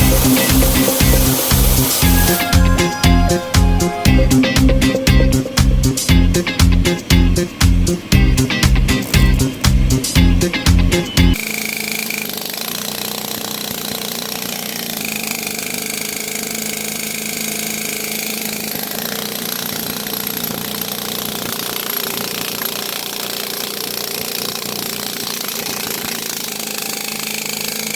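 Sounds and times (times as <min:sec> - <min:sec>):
constant hum: 0:00.0 - 0:11.4
sewer jetter rushing: 0:00.0 - 0:27.9.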